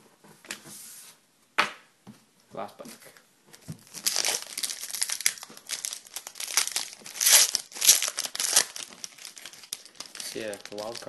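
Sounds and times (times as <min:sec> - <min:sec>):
plastic wrapper tearing and crinkling: 0:03.8 - 0:11.0.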